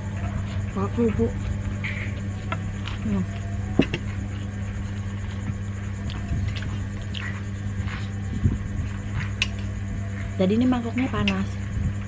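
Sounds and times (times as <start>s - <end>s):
steady low hum: 0.0s - 12.0s
chewing: 1.4s - 3.5s, 4.1s - 8.2s.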